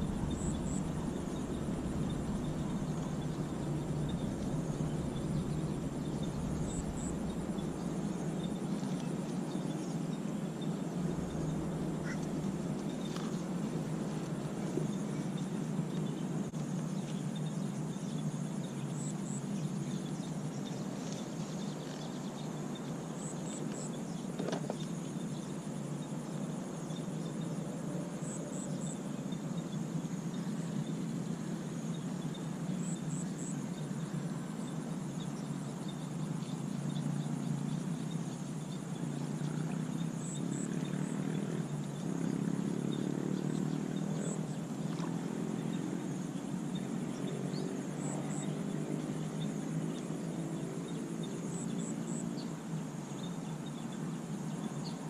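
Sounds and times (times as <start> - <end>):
low rumbling noise: 0.0 - 16.5.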